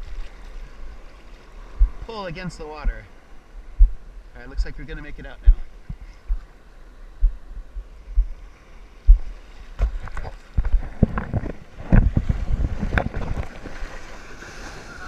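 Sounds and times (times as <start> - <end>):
sea water sloshing and splashing: 0.0 - 3.2, 8.1 - 15.0.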